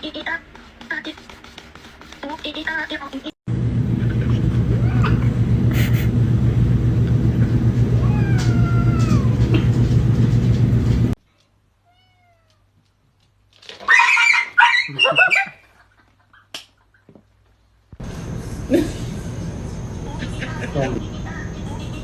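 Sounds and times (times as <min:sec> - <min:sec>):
steady low hum: 0:03.5 - 0:11.2, 0:17.9 - 0:22.0
cats yowling: 0:04.8 - 0:05.3, 0:08.0 - 0:09.5
cats meowing: 0:08.0 - 0:09.5, 0:11.8 - 0:12.7.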